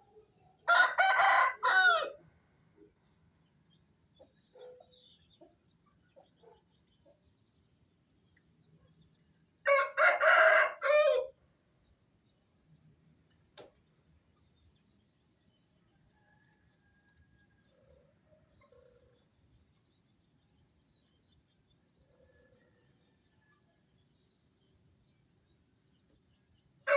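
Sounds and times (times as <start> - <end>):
crickets chirping: 0.0 - 26.9
rooster crowing: 0.6 - 2.2, 9.7 - 11.3.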